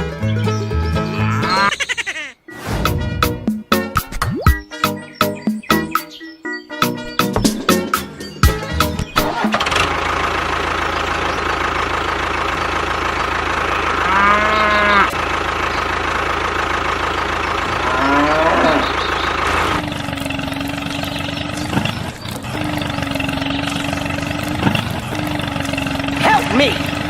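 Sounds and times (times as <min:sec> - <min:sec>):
engine running: 0:07.1 - 0:27.0
cow mooing: 0:13.9 - 0:15.2, 0:17.6 - 0:19.0.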